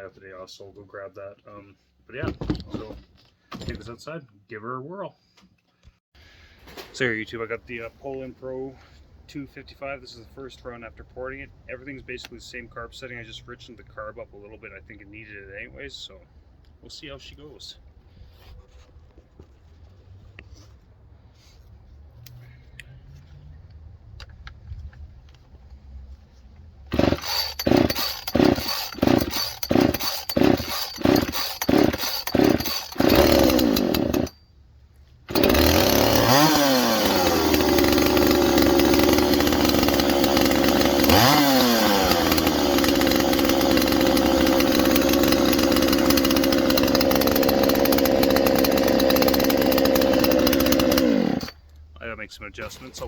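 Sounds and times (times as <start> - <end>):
chainsaw pull starting: 26.9 - 34.4, 35.3 - 51.7
chainsaw running and revving: 26.9 - 34.4, 35.3 - 51.6.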